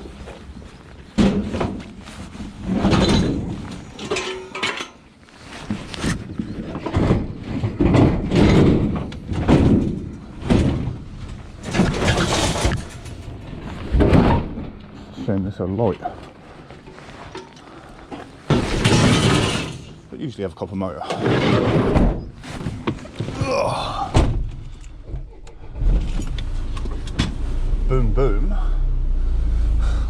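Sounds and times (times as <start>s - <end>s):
scrap metal knocks and clatters: 1.1s - 15.4s, 16.3s - 20.1s, 21.0s - 23.4s.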